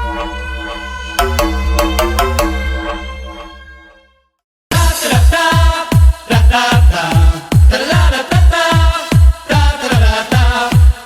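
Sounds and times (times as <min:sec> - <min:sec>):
synth line: 0:00.0 - 0:04.0.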